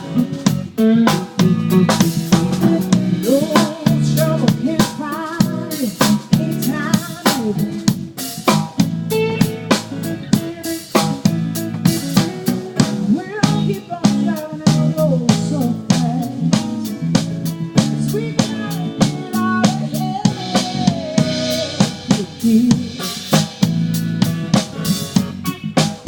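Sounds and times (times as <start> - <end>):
drum kit beat: 0.0 - 26.0
bending melodic line: 8.8 - 14.4.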